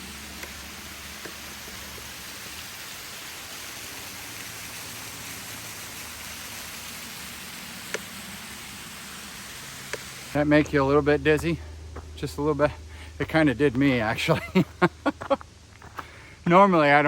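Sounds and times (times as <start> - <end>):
waterfall rushing: 0.0 - 11.2.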